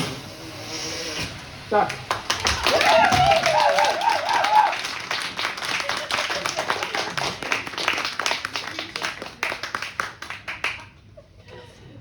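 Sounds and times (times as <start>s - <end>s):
audience applauding: 1.9s - 11.2s.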